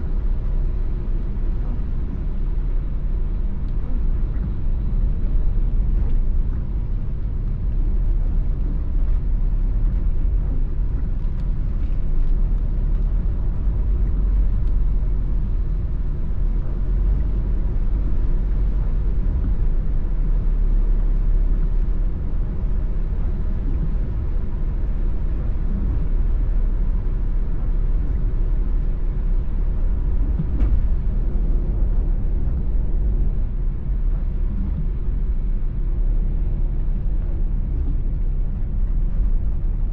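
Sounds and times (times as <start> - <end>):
car driving on wet road: 0.0 - 39.9.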